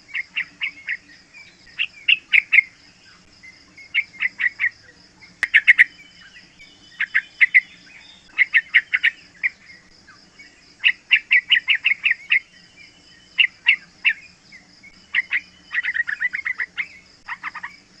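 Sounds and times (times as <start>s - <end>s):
pulsing insect trill: 0.0s - 18.0s
bird chattering calls: 3.8s - 9.8s, 14.9s - 17.9s.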